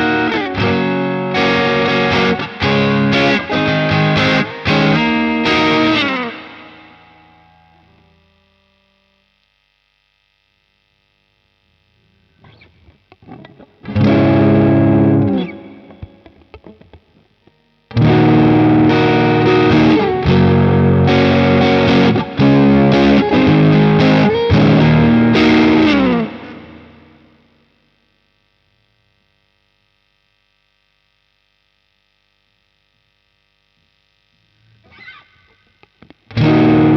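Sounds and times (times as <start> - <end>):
overdriven electric guitar chords: 0.0 - 9.3, 11.6 - 27.9, 34.1 - 36.9.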